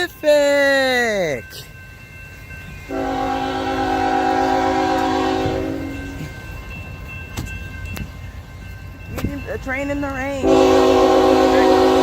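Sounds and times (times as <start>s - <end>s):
passing train rumble: 0.0s - 12.0s
locomotive air horn chord: 2.9s - 6.2s, 10.4s - 12.0s.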